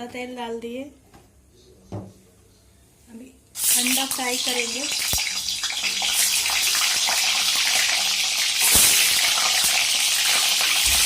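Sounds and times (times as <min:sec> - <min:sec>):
soft knock: 0:01.9 - 0:02.2
eggs sizzling in oil: 0:03.6 - 0:11.0.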